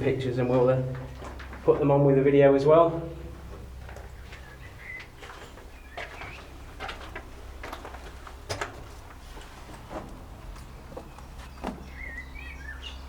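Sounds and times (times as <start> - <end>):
footsteps crunching on debris: 0.5 - 1.9, 3.4 - 12.2
faint bird chirps: 4.4 - 5.1, 11.5 - 13.0.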